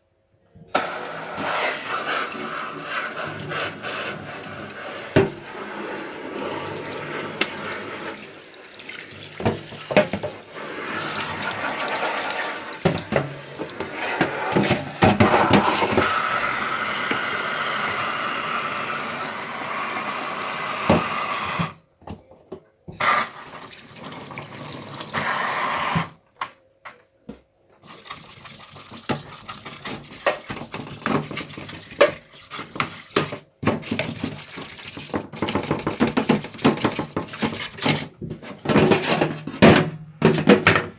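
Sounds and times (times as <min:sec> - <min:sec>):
water running from a tap: 0:00.8 - 0:21.8, 0:23.0 - 0:26.0.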